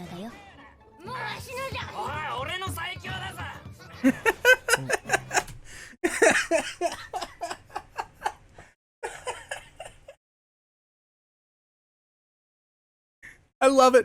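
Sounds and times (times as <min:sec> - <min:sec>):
person laughing hard: 0:04.0 - 0:08.4, 0:09.0 - 0:10.2.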